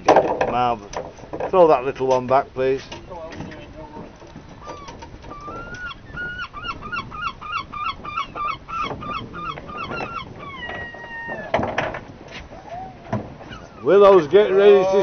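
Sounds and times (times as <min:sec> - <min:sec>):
gull honking calls: 0:04.6 - 0:11.6.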